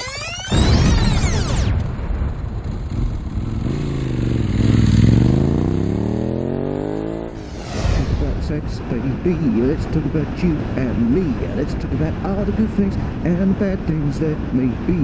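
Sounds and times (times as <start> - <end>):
motorcycle engine running: 2.3 - 7.4
loud sweeping sound: 7.2 - 9.3.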